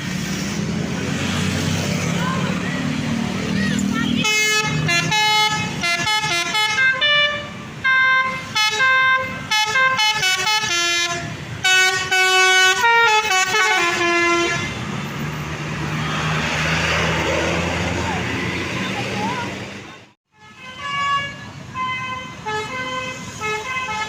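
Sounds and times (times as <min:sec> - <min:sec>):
bus horn playing a tune: 0:04.0 - 0:14.9, 0:20.3 - 0:24.0.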